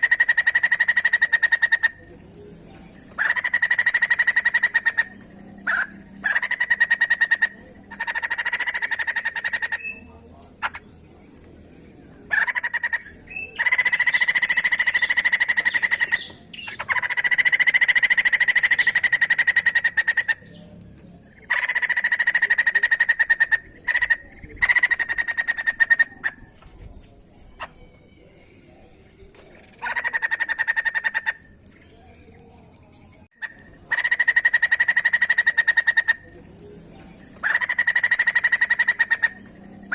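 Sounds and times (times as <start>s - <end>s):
bird rattling chatter calls: 0.0s - 2.4s, 3.0s - 11.6s, 12.2s - 26.6s, 29.1s - 39.9s.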